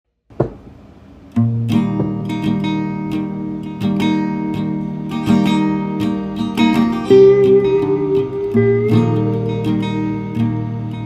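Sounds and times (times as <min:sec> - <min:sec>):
strummed acoustic guitar: 0:01.4 - 0:11.0.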